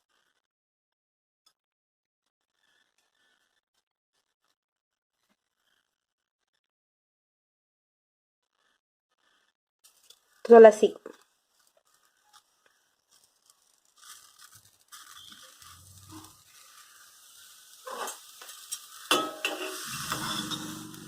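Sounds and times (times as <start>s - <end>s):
leaves sizzling in a hot pan: 9.9s - 21.0s
spatula scraping and clinking: 13.1s - 21.0s.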